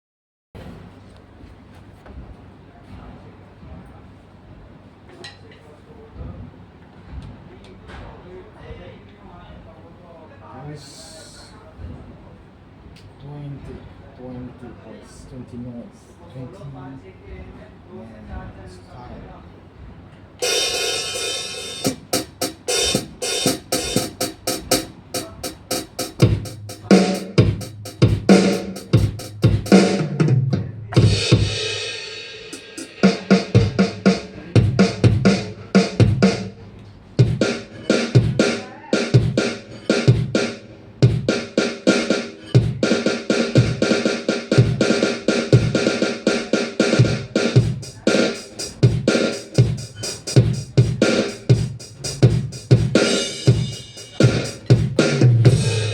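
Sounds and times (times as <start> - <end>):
electronic drum pattern: 20.4 - 36.6, 37.2 - 55.9
steady pitched tones: 20.4 - 55.9.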